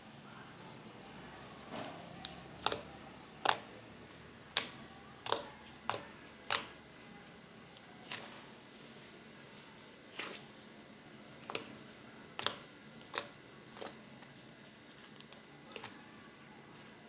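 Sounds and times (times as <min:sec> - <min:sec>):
slime clicking and popping: 0:02.2 - 0:03.8, 0:04.5 - 0:06.8, 0:11.4 - 0:14.0.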